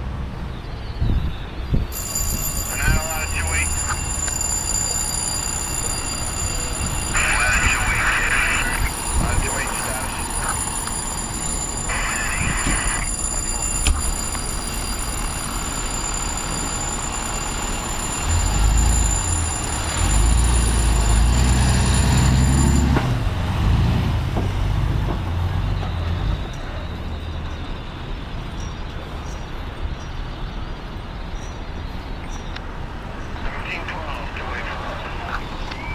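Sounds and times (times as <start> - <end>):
steady high whine: 1.8 - 23.4
diesel engine rumbling: 1.9 - 29.2.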